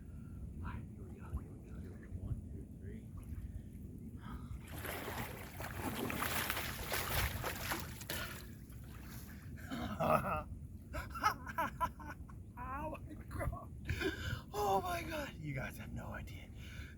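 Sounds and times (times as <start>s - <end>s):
water splashing and sloshing: 0.8s - 9.6s.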